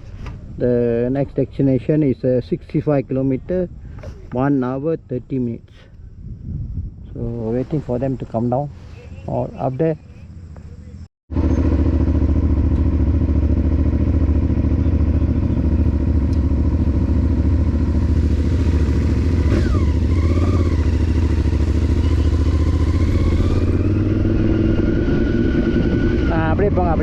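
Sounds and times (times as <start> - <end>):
motorcycle engine running: 8.9 - 27.0.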